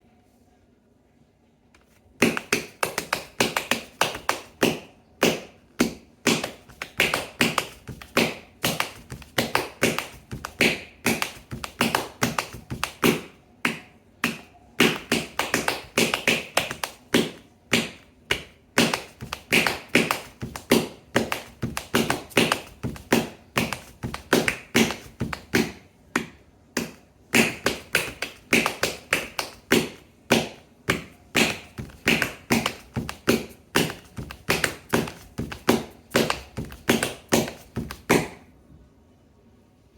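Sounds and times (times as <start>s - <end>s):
dancer's feet tapping and stamping: 2.2s - 38.4s.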